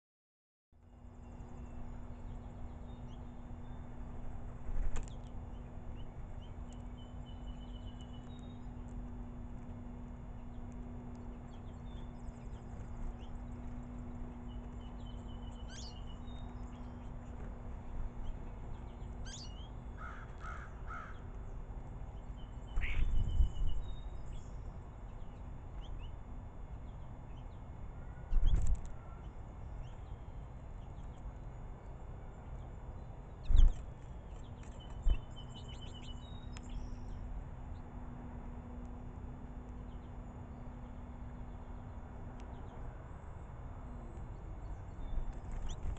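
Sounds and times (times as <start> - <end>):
birds chirping and twittering: 0.8 - 45.9.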